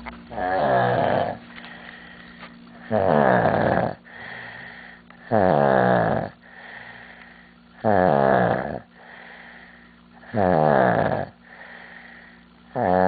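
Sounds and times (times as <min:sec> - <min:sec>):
loud snoring: 0:00.3 - 0:01.4, 0:02.8 - 0:04.5, 0:05.2 - 0:06.7, 0:07.8 - 0:09.2, 0:10.2 - 0:11.7, 0:12.7 - 0:13.0
soft breathing: 0:00.3 - 0:02.9, 0:03.9 - 0:05.3, 0:06.3 - 0:07.7, 0:08.9 - 0:10.2, 0:11.4 - 0:12.6.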